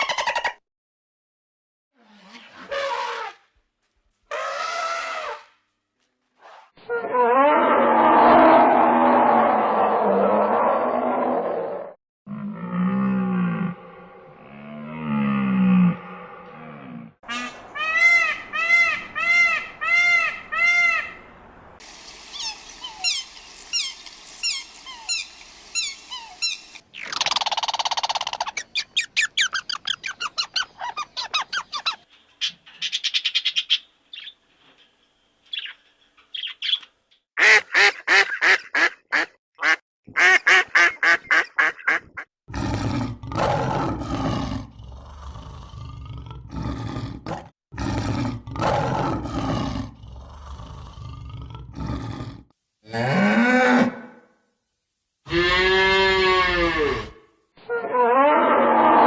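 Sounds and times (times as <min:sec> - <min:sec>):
bird calls: 0:21.9 - 0:34.4.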